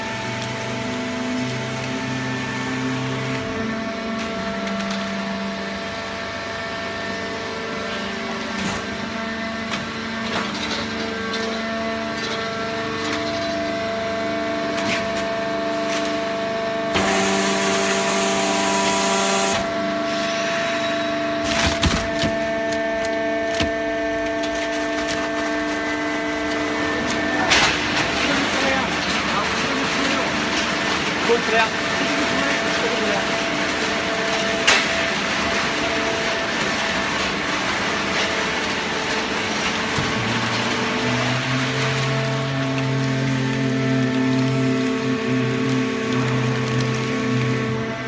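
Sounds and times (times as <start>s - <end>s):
hydraulic unit hum and whine: 0.0s - 48.0s
cardboard cracking and creaking: 21.4s - 30.7s.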